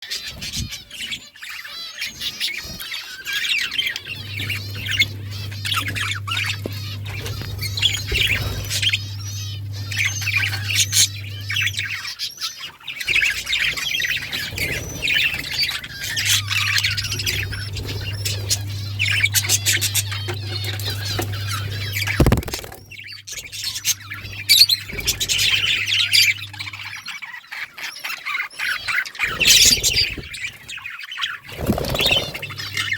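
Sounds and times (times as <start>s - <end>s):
budgerigars chattering: 0.0s - 32.9s
low steady hum: 3.6s - 27.2s, 31.5s - 32.9s.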